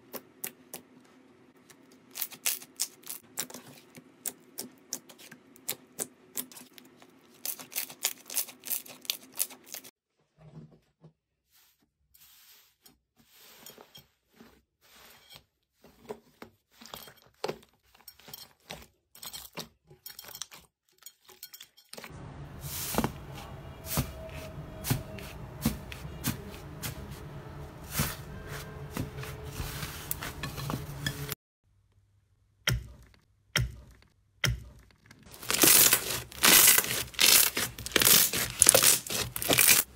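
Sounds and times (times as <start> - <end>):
slime crackling and popping: 35.3 - 39.9.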